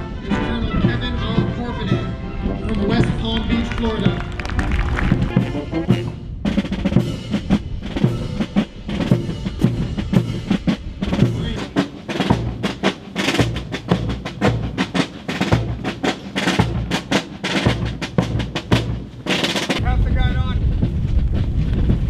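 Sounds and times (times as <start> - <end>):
sustained low instrument tones: 0.0 - 12.5
bass drum beats: 1.2 - 19.2, 19.8 - 22.0
snare drum rolls: 2.5 - 22.0.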